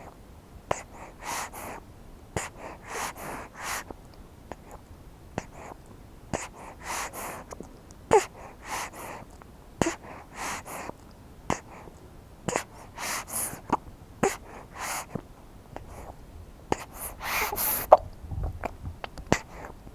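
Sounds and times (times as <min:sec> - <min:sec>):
breathy puffs of breath: 0:12.5 - 0:15.2, 0:15.8 - 0:18.0
baby swallowing: 0:15.8 - 0:19.8.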